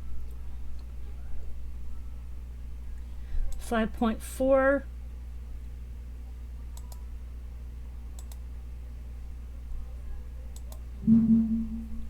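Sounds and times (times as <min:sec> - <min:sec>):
low electrical hum: 0:00.0 - 0:12.0
computer mouse clicks: 0:06.8 - 0:07.0, 0:08.2 - 0:08.4, 0:10.6 - 0:10.8
short steady-pitched hum: 0:11.0 - 0:12.0.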